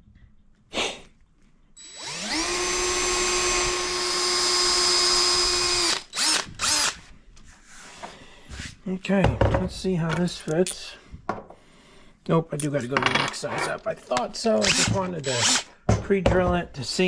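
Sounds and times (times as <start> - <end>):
power drill boring into wood: 1.8 - 7.1, 14.6 - 15.7.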